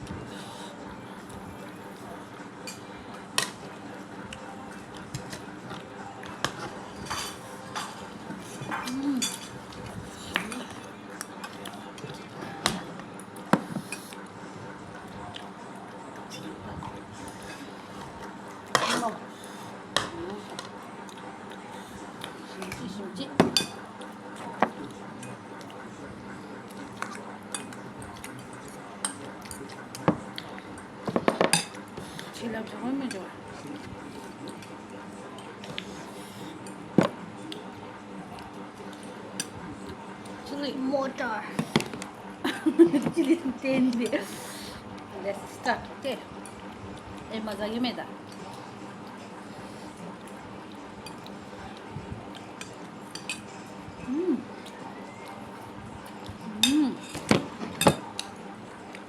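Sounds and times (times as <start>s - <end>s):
utensils clinking on a plate: 6.4s - 9.7s, 52.6s - 53.7s, 56.6s - 58.4s.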